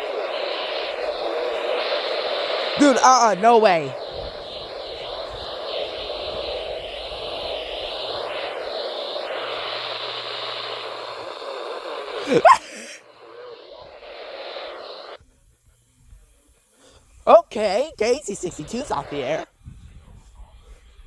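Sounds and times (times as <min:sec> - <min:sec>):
radio static hiss: 0:00.0 - 0:12.2, 0:17.3 - 0:19.5.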